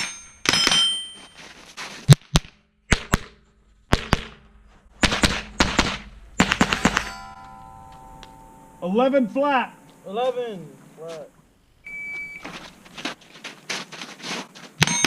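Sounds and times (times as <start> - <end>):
steel plate ringing: 0.0 - 1.4, 5.4 - 10.8
rifle shots: 2.9 - 7.4.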